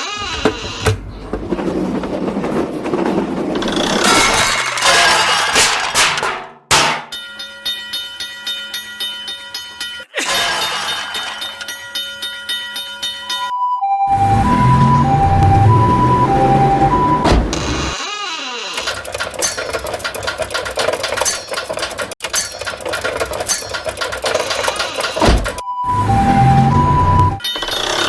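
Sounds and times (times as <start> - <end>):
railway crossing bell ringing: 19.4 - 20.2, 21.2 - 22.9, 23.5 - 24.1.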